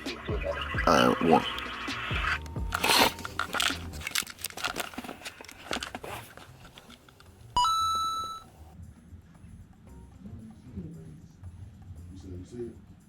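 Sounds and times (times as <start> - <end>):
handling noise rustling and clicking: 2.4 - 7.6
short electronic beep: 7.6 - 8.5.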